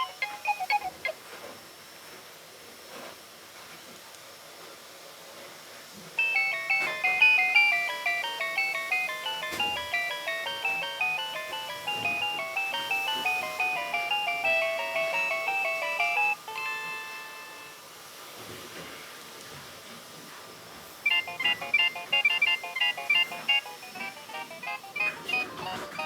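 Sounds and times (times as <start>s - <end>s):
phone ringtone melody: 0.0s - 1.2s, 6.2s - 17.8s, 21.0s - 26.0s.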